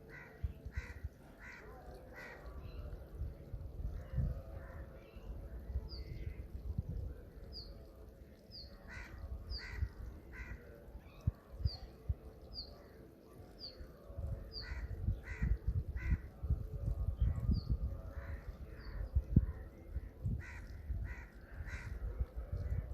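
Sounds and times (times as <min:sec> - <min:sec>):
crows cawing: 0:00.1 - 0:02.5, 0:08.8 - 0:10.8, 0:14.6 - 0:16.3, 0:20.4 - 0:22.0.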